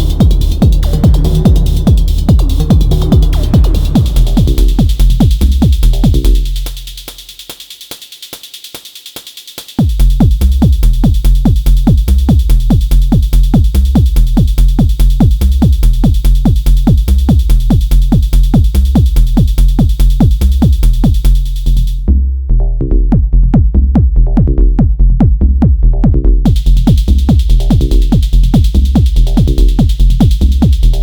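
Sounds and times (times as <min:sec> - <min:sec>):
steady high synth tone: 0:00.0 - 0:05.1
techno synth hits: 0:00.0 - 0:06.5
kick drum and bass: 0:00.0 - 0:31.0.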